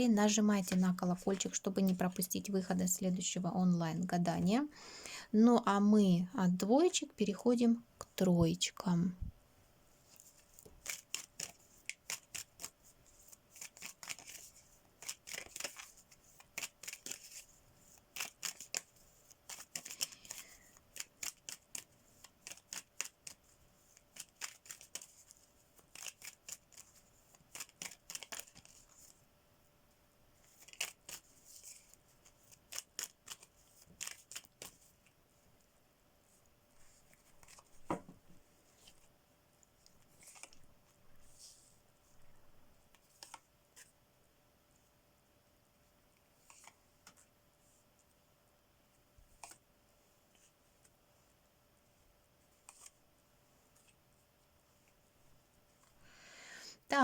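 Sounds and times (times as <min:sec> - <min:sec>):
cards being shuffled: 0:10.1 - 0:29.2, 0:30.4 - 0:34.9, 0:36.9 - 0:39.1, 0:40.0 - 0:41.6, 0:43.0 - 0:43.9, 0:46.4 - 0:47.2, 0:49.3 - 0:49.6.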